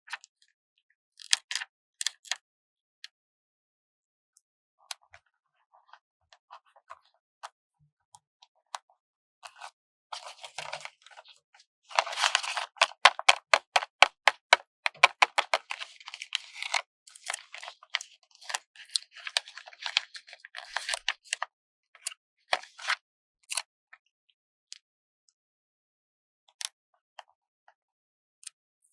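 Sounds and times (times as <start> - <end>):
paper rustling: 11.9 - 16.8.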